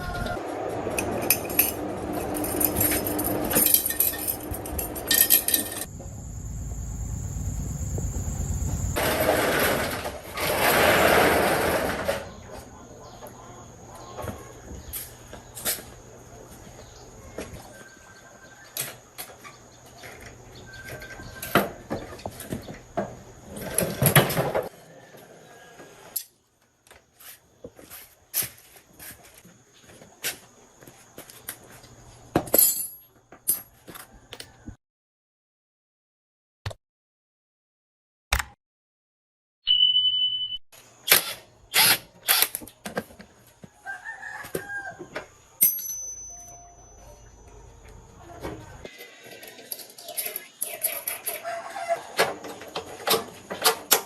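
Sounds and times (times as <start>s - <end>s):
rooster crowing: 0.0s - 0.5s, 24.7s - 26.2s, 43.6s - 45.4s, 51.2s - 52.7s
knocks and clinks: 1.0s - 5.9s, 45.6s - 47.6s.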